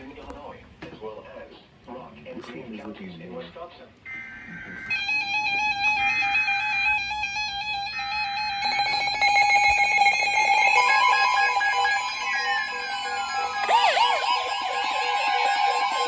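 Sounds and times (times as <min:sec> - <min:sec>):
warbling alarm tones: 0:04.1 - 0:16.0
fast-pulsing tone: 0:07.6 - 0:16.0
beeping tones: 0:08.3 - 0:16.0
screechy digital data bursts: 0:08.4 - 0:16.0.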